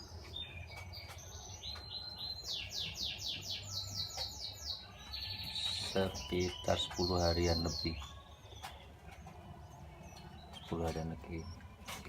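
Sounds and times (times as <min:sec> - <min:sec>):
canaries singing: 0:00.0 - 0:12.0.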